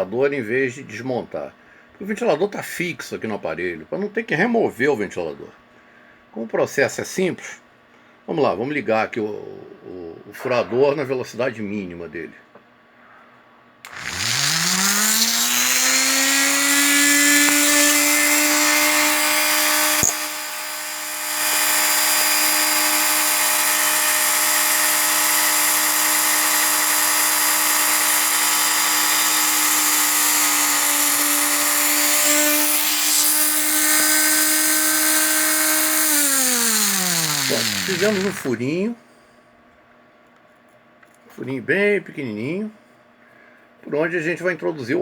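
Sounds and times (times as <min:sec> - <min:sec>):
rotary tool whining: 0:13.9 - 0:38.6
click: 0:20.0 - 0:20.3.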